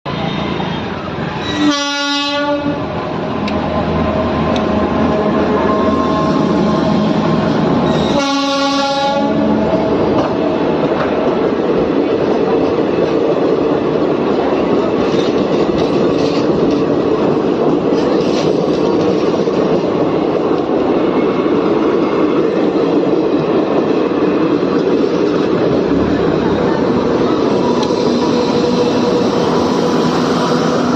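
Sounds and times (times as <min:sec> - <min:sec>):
train rumbling on rails: 0:00.0 - 0:30.9
train horn blast: 0:01.4 - 0:02.9, 0:07.8 - 0:09.7.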